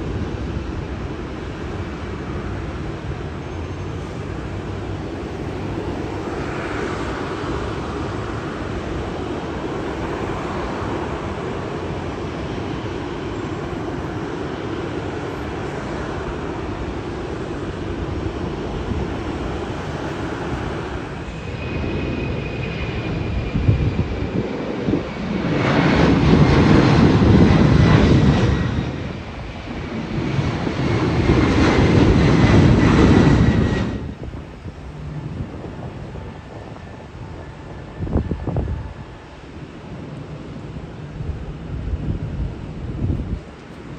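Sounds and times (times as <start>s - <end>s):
jet airliner engines whining: 0.0s - 43.9s
loud rushing noise: 4.0s - 13.0s, 15.5s - 24.1s.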